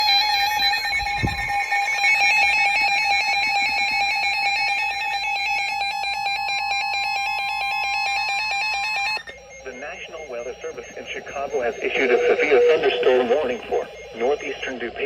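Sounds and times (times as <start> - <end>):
steady alarm tone: 0.0 - 15.0
weather radio alert alarms: 0.0 - 15.0.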